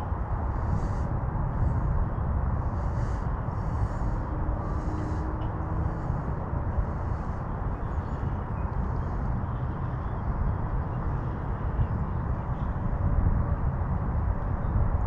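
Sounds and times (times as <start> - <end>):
outdoor rushing noise: 0.0 - 10.6.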